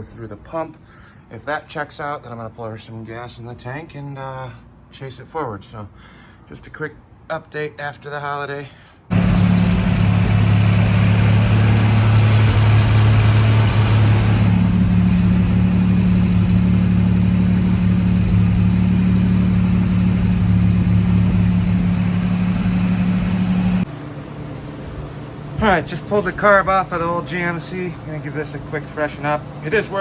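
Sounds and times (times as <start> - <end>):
truck engine running: 9.1 - 30.0.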